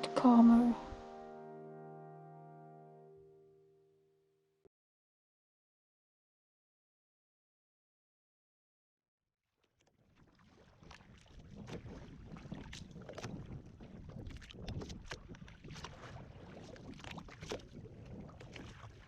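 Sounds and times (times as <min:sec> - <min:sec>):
water splashing against boat hull: 0:10.0 - 0:19.0.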